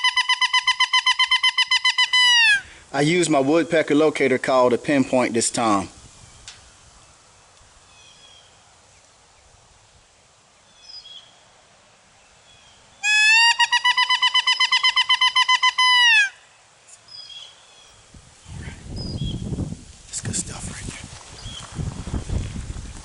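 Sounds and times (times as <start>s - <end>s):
woodpecker locator call: 0.0s - 2.7s, 13.0s - 16.4s.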